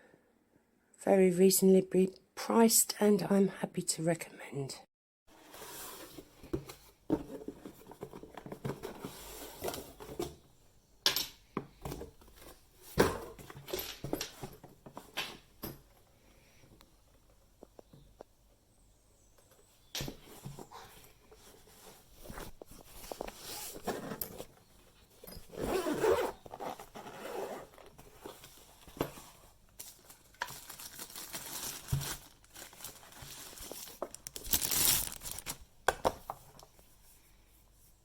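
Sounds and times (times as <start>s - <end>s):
rustling and scraping: 5.3s - 10.4s, 19.6s - 35.6s
zip being pulled: 25.4s - 27.8s.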